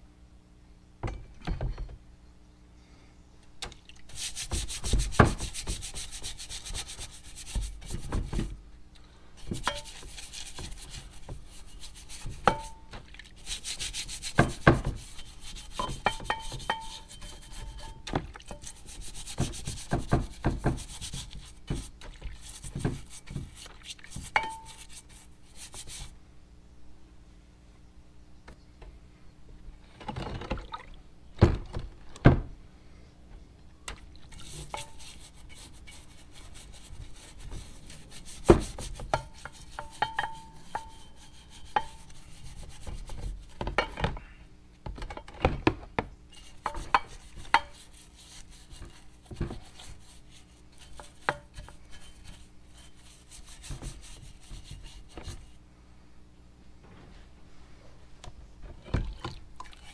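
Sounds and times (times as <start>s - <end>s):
scrubbing metal parts: 4.1s - 8.4s, 9.4s - 26.1s, 34.3s - 43.6s, 46.3s - 55.5s.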